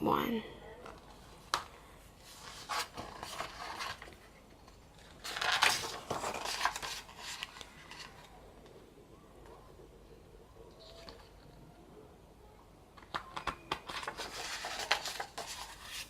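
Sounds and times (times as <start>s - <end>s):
paper and cardboard rustling: 0.8s - 8.4s, 13.0s - 16.0s.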